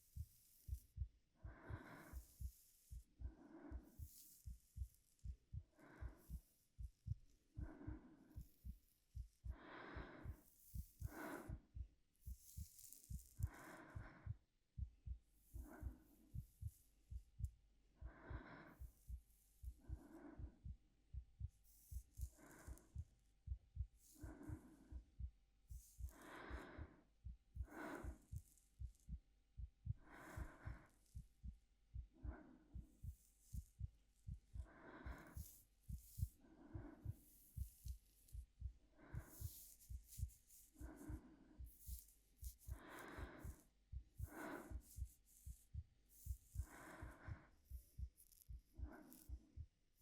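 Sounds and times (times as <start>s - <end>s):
heartbeat thumping: 0.0s - 50.0s
woman breathing softly: 0.0s - 50.0s.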